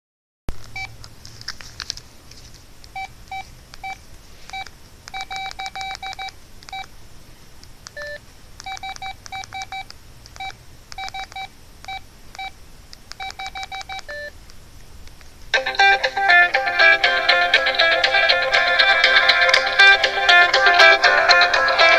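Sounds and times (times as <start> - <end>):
phone key beeps: 3.0 - 6.9, 7.9 - 12.5, 13.2 - 14.3
loud phone ringtone: 15.6 - 21.9.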